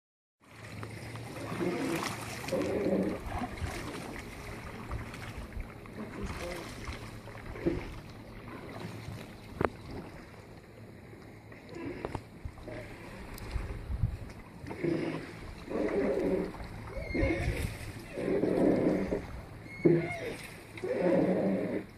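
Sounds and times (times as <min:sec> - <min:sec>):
water wash: 0:00.4 - 0:21.9
wind noise: 0:13.3 - 0:14.4, 0:17.0 - 0:18.0.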